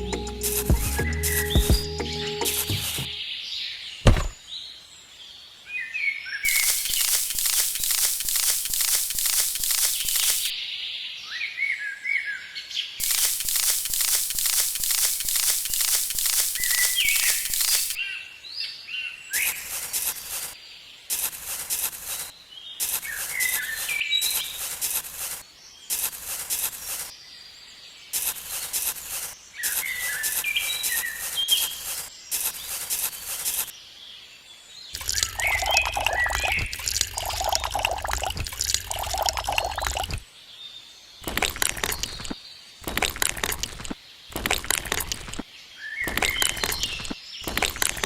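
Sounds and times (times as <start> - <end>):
birds chirping: 0.0 - 3.3, 13.0 - 18.1, 34.9 - 40.1
steady high hiss: 13.0 - 18.0.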